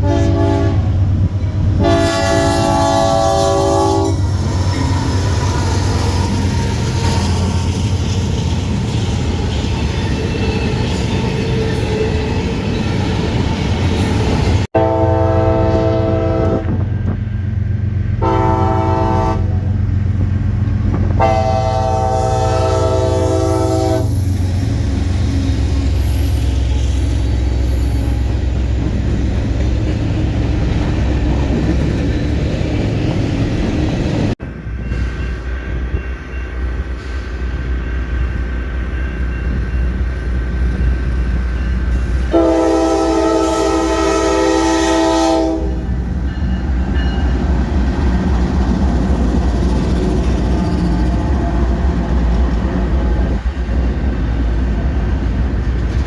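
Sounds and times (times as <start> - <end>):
locomotive air horn blasts: 0.0 - 1.0, 1.8 - 4.2, 14.8 - 16.8, 18.2 - 19.7, 21.2 - 24.2, 42.3 - 45.9
train rumbling past: 0.0 - 56.0.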